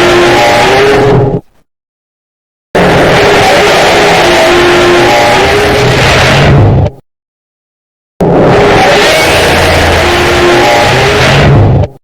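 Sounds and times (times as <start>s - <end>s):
loud rumbling noise: 0.0s - 1.5s, 2.8s - 7.0s, 8.2s - 12.0s.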